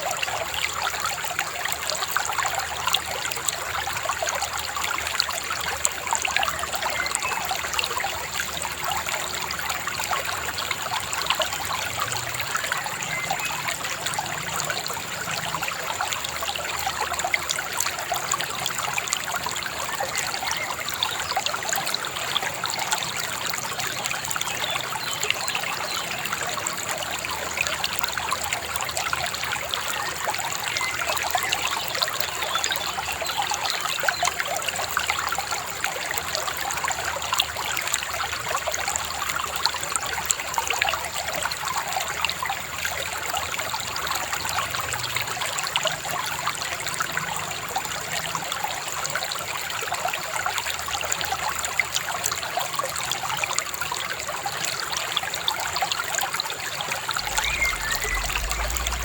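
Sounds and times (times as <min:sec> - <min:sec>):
river babbling over stones: 0:57.0 - 0:59.0.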